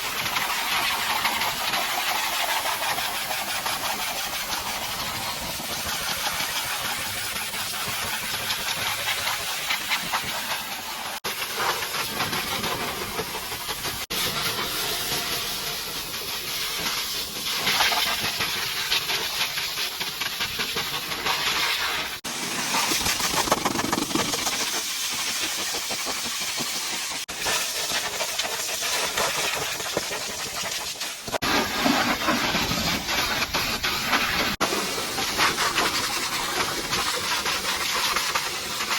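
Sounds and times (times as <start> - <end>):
pressure washer spraying water: 0.0 - 38.9.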